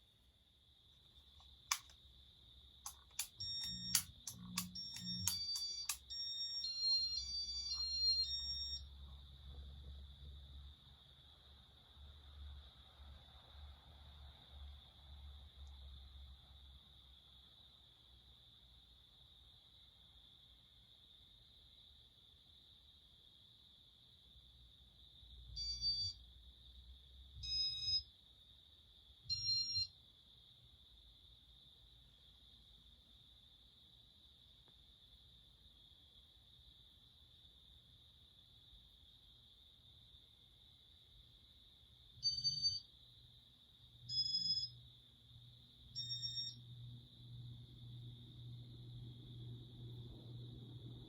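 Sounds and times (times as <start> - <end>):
short electronic beeps: 3.2 - 8.8, 44.1 - 44.7.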